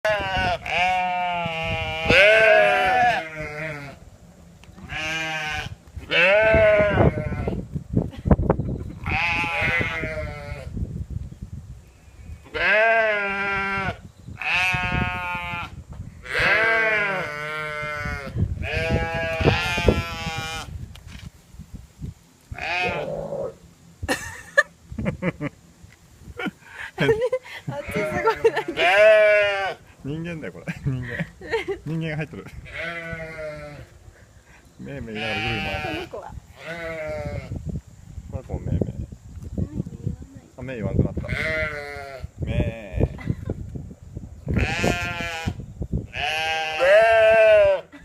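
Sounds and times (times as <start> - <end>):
goat bleating: 0.0 - 4.0, 4.8 - 7.6, 9.0 - 10.7, 12.5 - 15.6, 16.3 - 20.7, 22.6 - 23.5, 27.7 - 29.9, 32.7 - 33.9, 35.1 - 37.5, 41.3 - 43.2, 44.5 - 48.0.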